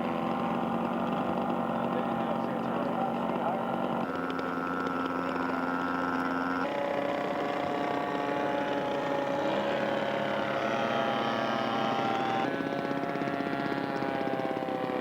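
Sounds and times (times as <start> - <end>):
model airplane engine running: 0.0 - 15.0.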